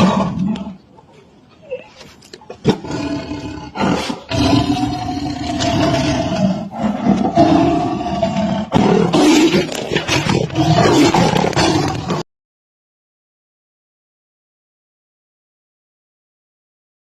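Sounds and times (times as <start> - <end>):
big cat roaring and growling: 0.0 - 0.8, 2.6 - 12.2.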